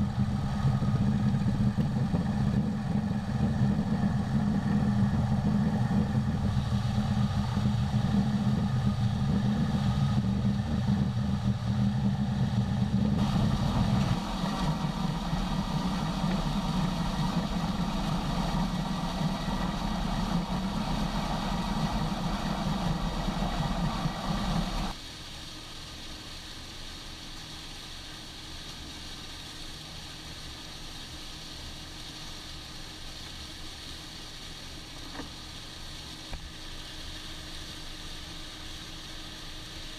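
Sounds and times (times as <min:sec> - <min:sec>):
heavy farm machinery running: 0:00.0 - 0:24.9.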